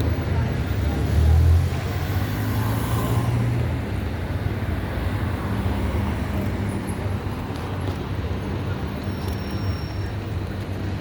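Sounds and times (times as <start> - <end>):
vehicle engines rumbling: 0.0 - 11.0.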